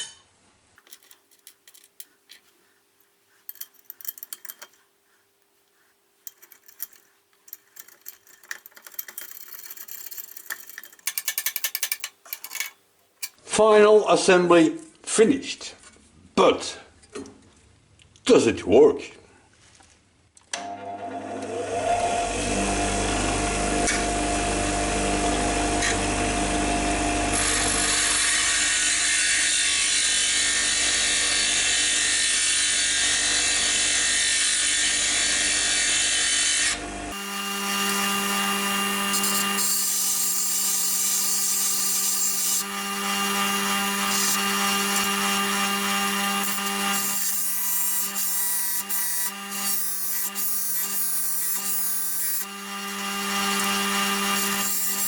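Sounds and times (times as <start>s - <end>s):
bench grinder grinding: 0.8s - 4.9s, 5.8s - 13.4s, 32.1s - 55.0s.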